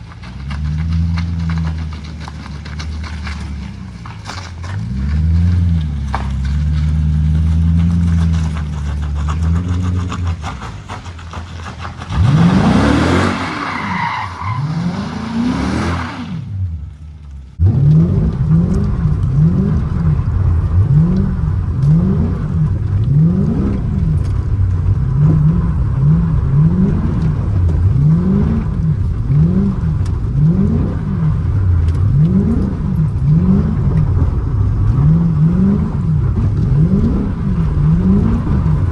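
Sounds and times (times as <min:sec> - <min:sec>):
car engine revving: 0:00.0 - 0:38.9
tyres squealing and skidding: 0:06.1 - 0:16.6.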